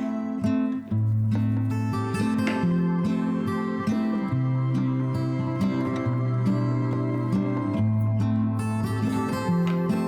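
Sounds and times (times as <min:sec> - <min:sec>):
plucked acoustic guitar: 0:00.0 - 0:10.0.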